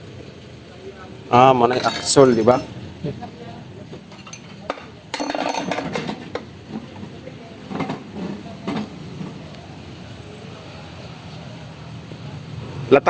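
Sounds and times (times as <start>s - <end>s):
metal tools clinking and clattering: 1.7s - 2.8s, 4.1s - 6.5s.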